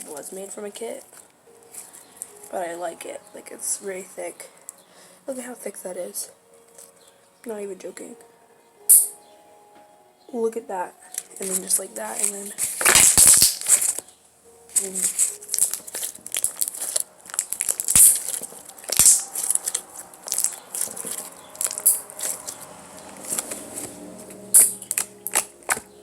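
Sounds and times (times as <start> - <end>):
slime squished by hand: 14.8 - 22.6.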